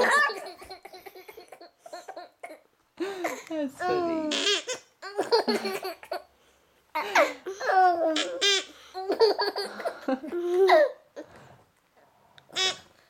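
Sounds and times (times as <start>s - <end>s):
baby laughing: 0.0s - 2.5s, 3.8s - 6.3s, 7.0s - 11.0s.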